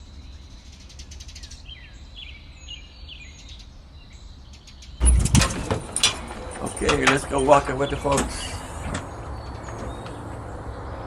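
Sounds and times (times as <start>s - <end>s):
wild birds chirping: 0.0s - 11.0s
loud clatter: 5.0s - 11.0s.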